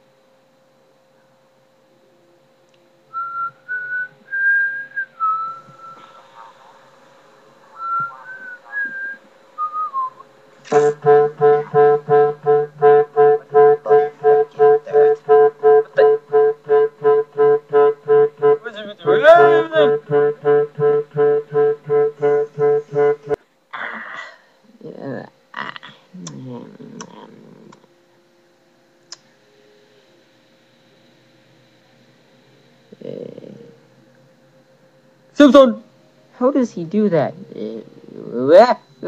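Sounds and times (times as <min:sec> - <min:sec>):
person whistling a tune: 0:03.1 - 0:06.2, 0:07.8 - 0:23.4
staccato reedy brass-like note: 0:10.7 - 0:23.4
swooping sound: 0:10.7 - 0:23.4.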